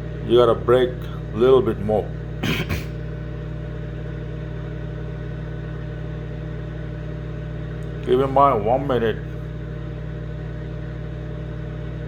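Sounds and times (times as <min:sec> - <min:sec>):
microwave oven humming: 0:00.0 - 0:12.0.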